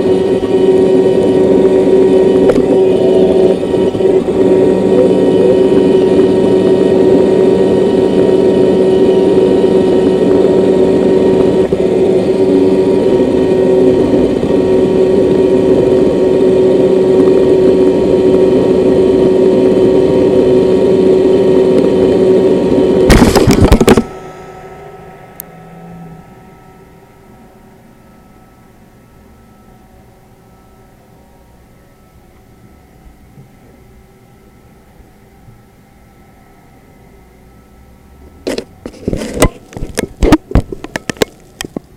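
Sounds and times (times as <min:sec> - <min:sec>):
robot vacuum motor hum: 0:00.0 - 0:24.6.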